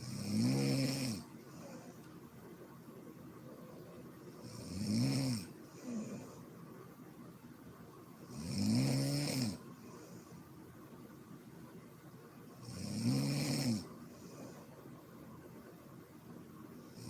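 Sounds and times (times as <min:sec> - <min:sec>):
woman snoring: 0:00.0 - 0:01.9, 0:04.4 - 0:06.4, 0:08.3 - 0:09.6, 0:12.6 - 0:13.9
quiet breathing: 0:00.0 - 0:07.0, 0:08.2 - 0:11.1, 0:12.5 - 0:15.8.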